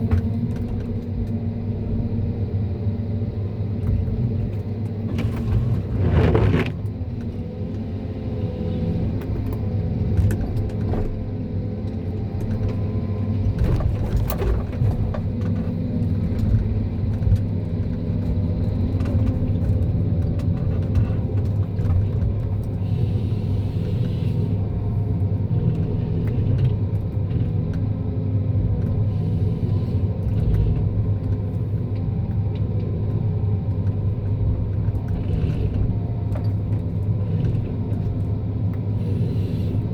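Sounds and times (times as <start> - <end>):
diesel engine droning: 0.0 - 39.9.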